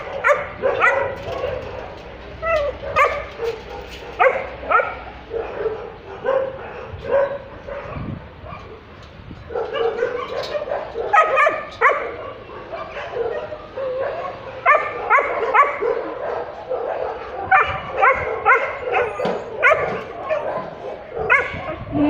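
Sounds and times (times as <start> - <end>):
dogs whining: 0.0 - 8.8, 9.5 - 22.0
dogs barking and yipping: 0.0 - 22.0.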